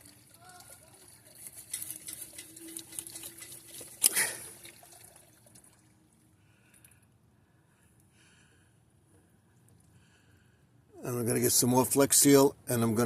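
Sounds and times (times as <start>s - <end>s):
water trickling: 0.0s - 6.3s.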